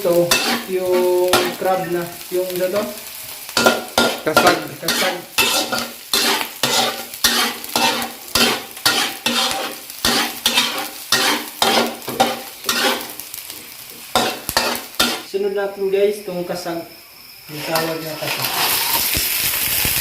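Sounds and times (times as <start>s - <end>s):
utensil scraping a pan: 0.0s - 1.8s, 3.6s - 13.2s, 14.1s - 15.3s, 17.5s - 19.8s
garlic and onion sizzling: 0.0s - 20.0s.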